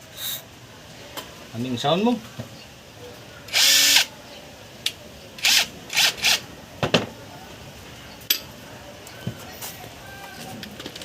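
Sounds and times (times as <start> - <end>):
short bursts of tool noise: 3.5 - 4.1.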